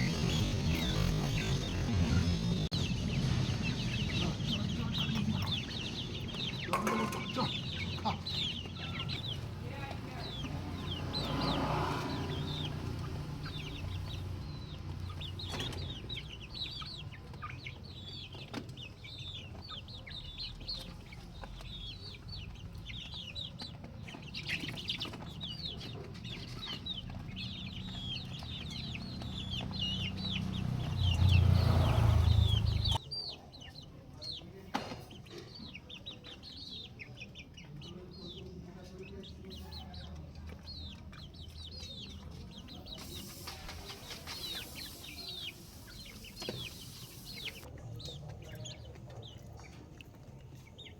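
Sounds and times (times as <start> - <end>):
chicks peeping: 0.0 - 50.9.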